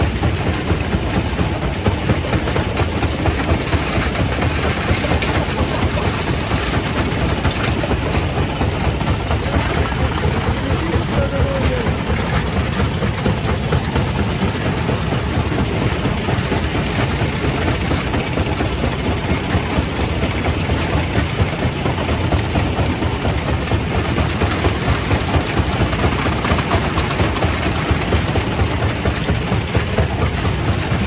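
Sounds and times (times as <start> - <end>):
heavy machine noise: 0.1 - 19.2.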